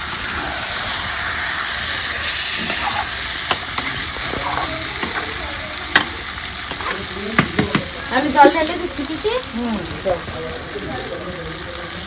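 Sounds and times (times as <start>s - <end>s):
meat sizzling in hot oil: 0.0s - 12.0s
spatula knocking against pan: 5.9s - 6.1s, 6.7s - 7.9s.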